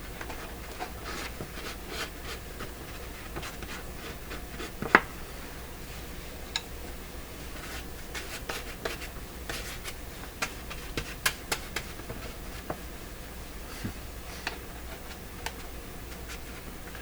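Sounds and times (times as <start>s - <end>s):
paper rustling and rubbing: 0.0s - 6.2s.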